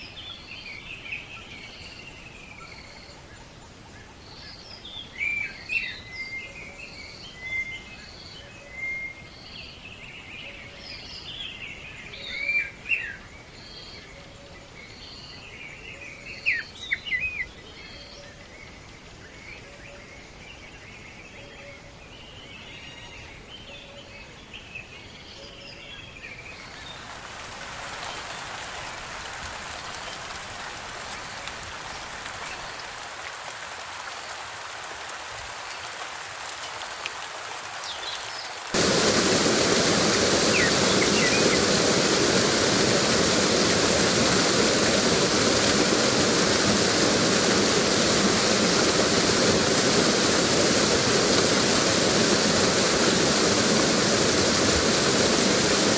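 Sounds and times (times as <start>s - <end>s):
rushing water: 26.4s - 55.9s.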